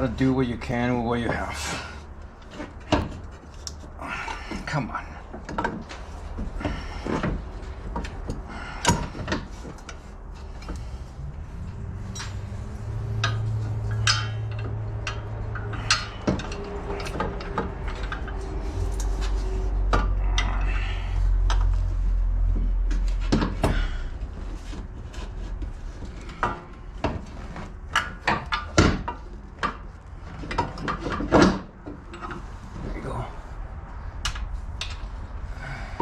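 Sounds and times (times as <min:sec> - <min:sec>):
low steady hum: 0:00.0 - 0:36.0
metal tools clanking: 0:11.6 - 0:21.6.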